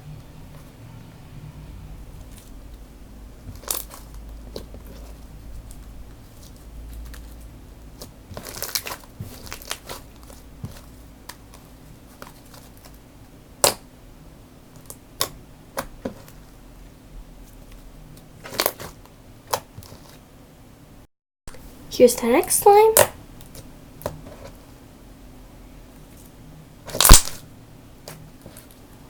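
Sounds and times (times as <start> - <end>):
slime crackling and popping: 3.4 - 4.7, 8.0 - 13.0, 18.4 - 20.1, 26.9 - 27.4.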